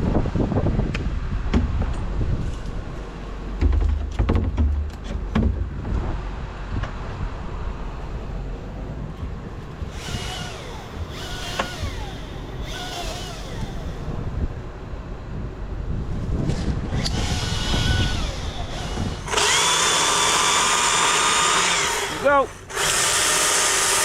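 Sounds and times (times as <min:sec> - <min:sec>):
low rumbling and scraping: 0:00.0 - 0:23.1
chainsaw running at full throttle: 0:17.0 - 0:24.0.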